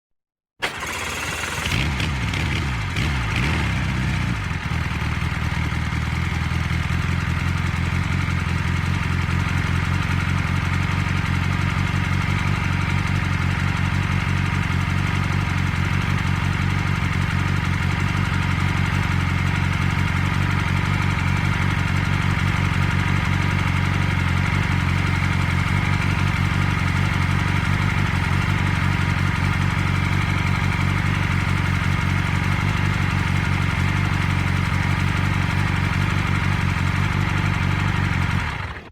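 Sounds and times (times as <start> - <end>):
car engine starting and idling: 0.6 - 3.5, 13.6 - 38.9.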